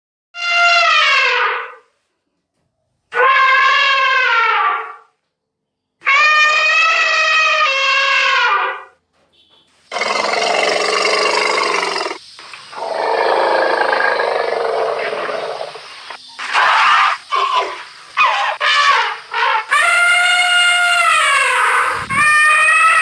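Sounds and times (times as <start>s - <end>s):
elephant trumpeting and roaring: 9.9s - 23.0s.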